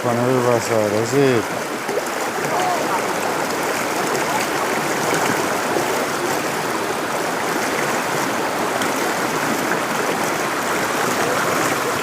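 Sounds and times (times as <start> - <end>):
river water rushing: 0.0 - 12.0.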